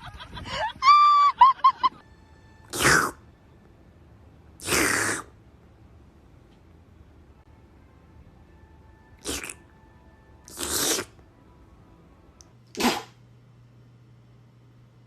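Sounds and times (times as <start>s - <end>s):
goose hissing: 2.7s - 3.2s, 4.6s - 5.3s, 10.5s - 11.2s.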